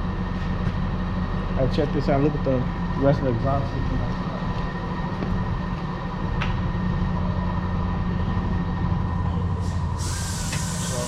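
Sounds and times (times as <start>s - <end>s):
hiss: 9.6s - 11.0s.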